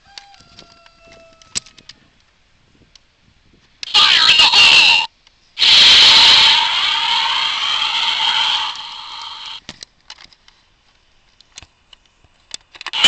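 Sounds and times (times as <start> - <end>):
toy jet electronic whoosh: 5.6 - 9.6.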